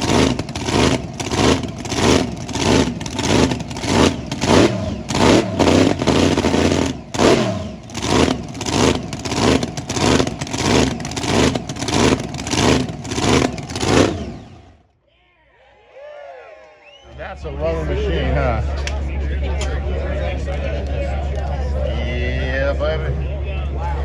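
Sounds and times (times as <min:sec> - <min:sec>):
engine revving in throttle blips: 0:00.0 - 0:14.8.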